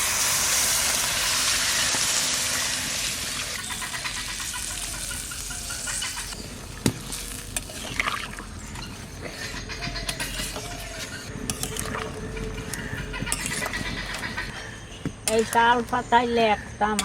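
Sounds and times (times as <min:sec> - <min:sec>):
meat sizzling in a pan: 0:00.0 - 0:06.4.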